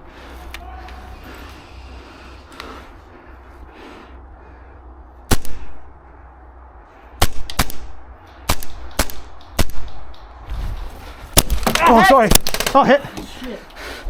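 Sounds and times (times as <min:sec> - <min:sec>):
airsoft gun shots: 0:07.2 - 0:10.2.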